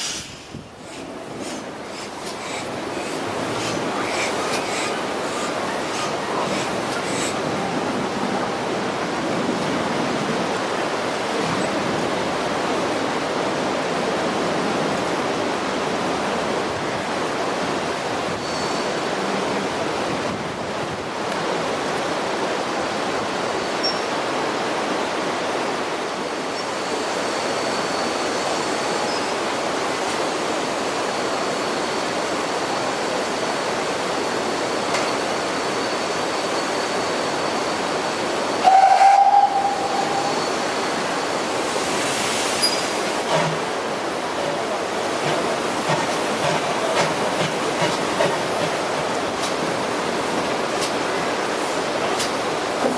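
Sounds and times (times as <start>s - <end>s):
locomotive steam hissing: 0.0s - 8.2s, 35.1s - 52.9s
faint high whistle-like tone: 38.6s - 40.8s.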